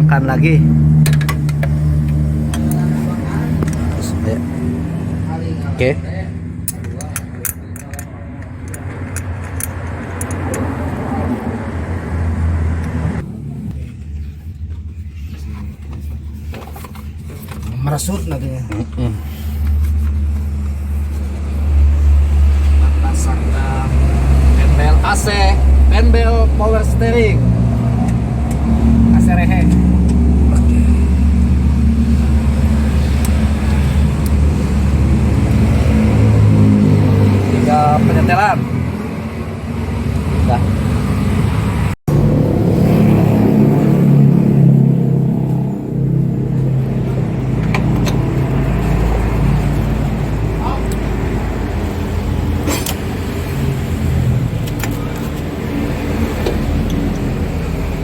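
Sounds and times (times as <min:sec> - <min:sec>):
car engine idling: 0:00.0 - 0:37.1
cooling fan turning: 0:00.0 - 0:58.0.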